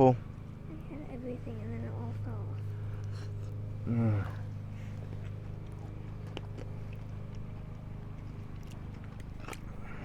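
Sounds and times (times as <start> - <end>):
steady low hum: 0.0 - 10.0
people chewing: 2.5 - 10.0.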